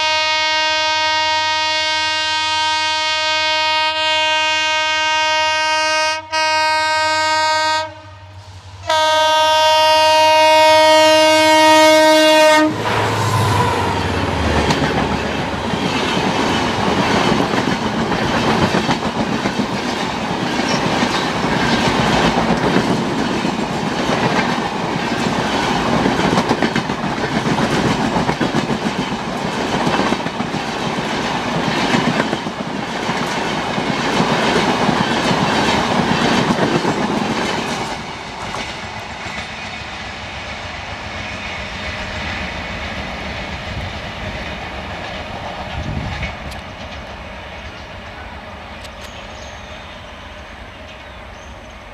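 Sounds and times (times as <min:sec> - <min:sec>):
diesel locomotive horn blasting: 0:00.0 - 0:14.6
wheel clatter on rails: 0:14.6 - 0:39.5.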